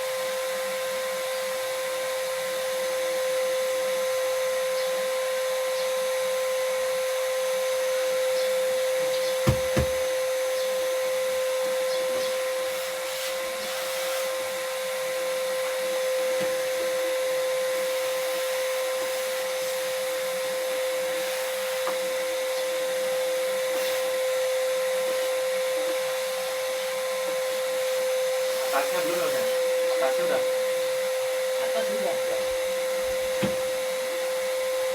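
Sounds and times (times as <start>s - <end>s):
electric fan motor whine: 0.0s - 34.9s
short knocks: 9.4s - 10.1s.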